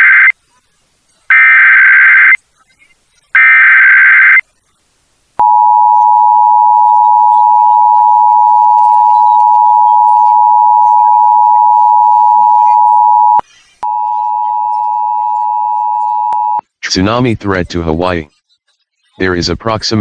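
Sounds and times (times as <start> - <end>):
harsh data burst: 0.0 - 0.3, 3.4 - 4.4
two-tone attention signal: 5.4 - 16.6.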